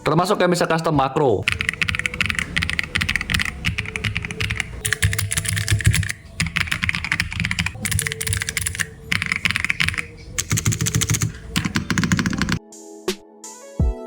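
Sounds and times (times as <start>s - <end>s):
fast typing on mechanical keyboard: 1.4s - 12.6s.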